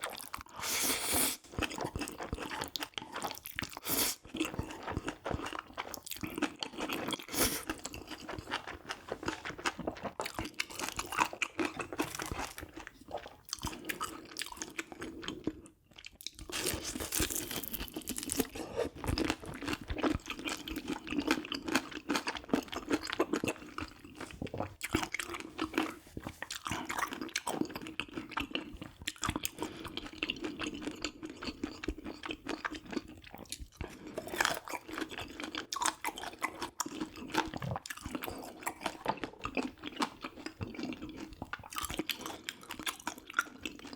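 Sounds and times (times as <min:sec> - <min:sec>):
chewing and crunching food: 0:00.0 - 0:43.9
wet mouth sounds: 0:37.3 - 0:39.6.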